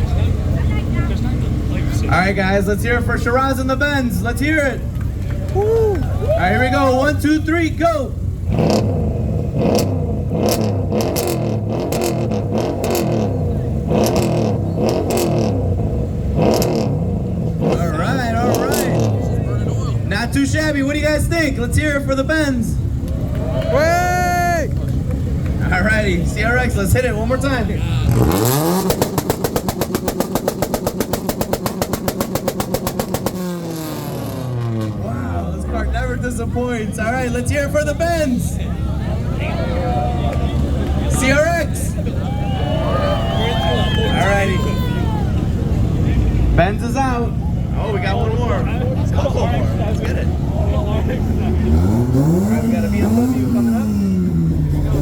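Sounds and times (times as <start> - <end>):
car engine on rev limiter: 6.3 - 55.0
sharp exhaust pops: 7.1 - 17.9, 28.0 - 35.0
exhaust pops and bangs: 28.0 - 35.0.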